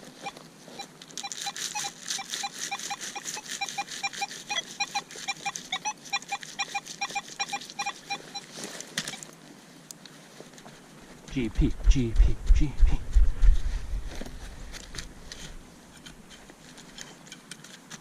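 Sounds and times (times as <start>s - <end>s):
metal detector beeps: 0.2s - 9.3s
crackling clicks: 0.8s - 10.7s.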